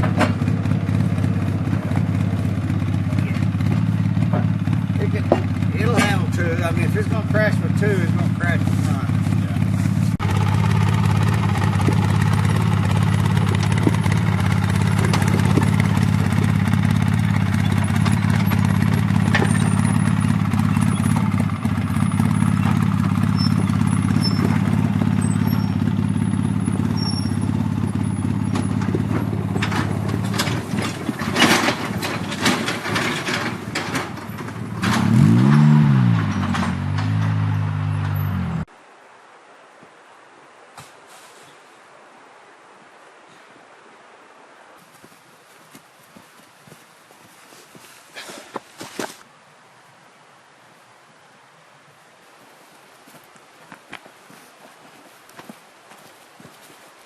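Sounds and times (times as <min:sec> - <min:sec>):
knocks and clatter: 0:00.0 - 0:38.5
engine revving: 0:00.0 - 0:38.7
vehicle engine running: 0:00.0 - 0:38.7.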